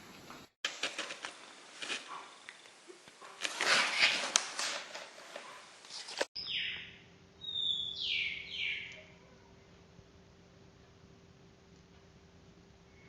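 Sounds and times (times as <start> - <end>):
rustling: 0.2 - 6.4
high bird-like chirps: 6.4 - 9.2.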